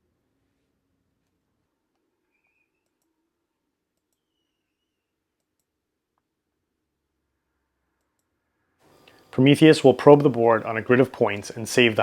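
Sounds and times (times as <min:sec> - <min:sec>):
very faint clicks: 0:01.2 - 0:03.2, 0:03.9 - 0:04.3.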